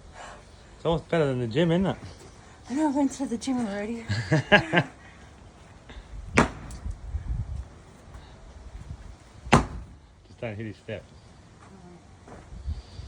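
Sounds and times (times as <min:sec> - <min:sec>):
sledgehammer striking concrete: 0:06.4 - 0:06.9, 0:09.5 - 0:10.0.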